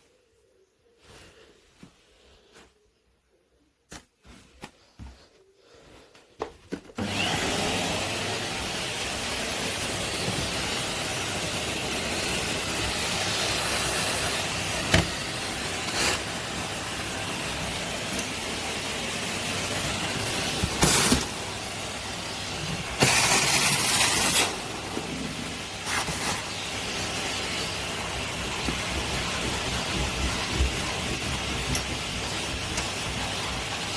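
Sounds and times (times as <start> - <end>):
vacuum cleaner running: 7.0 - 33.9.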